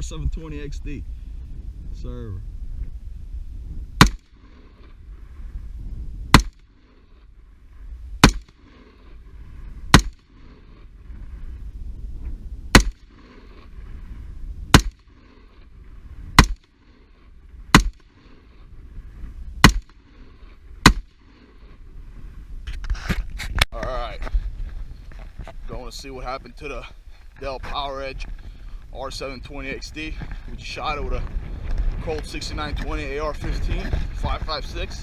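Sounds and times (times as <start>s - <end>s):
rifle shots: 4.0s - 5.0s, 6.3s - 7.0s, 8.2s - 9.0s, 9.9s - 10.7s, 12.7s - 13.7s, 14.7s - 15.4s, 16.4s - 16.9s, 17.7s - 18.3s, 19.6s - 20.1s, 20.8s - 21.2s.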